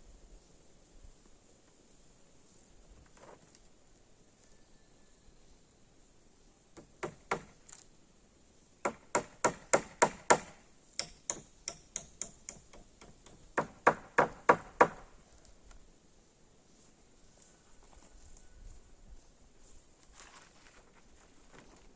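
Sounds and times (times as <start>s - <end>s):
hammer strikes: 8.9s - 15.0s.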